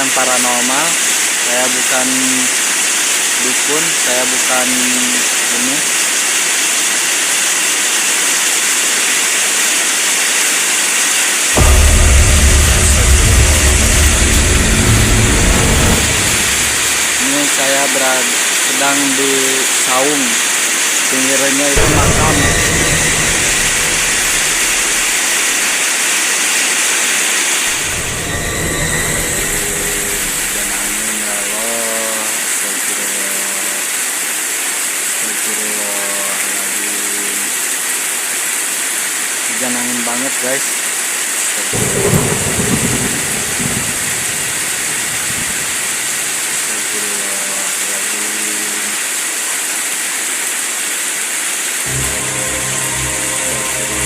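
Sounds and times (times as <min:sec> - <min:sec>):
heavy rain: 0:00.0 - 0:54.0
low pulsing hum: 0:11.6 - 0:17.2
strong wind: 0:11.6 - 0:17.2, 0:41.8 - 0:46.7.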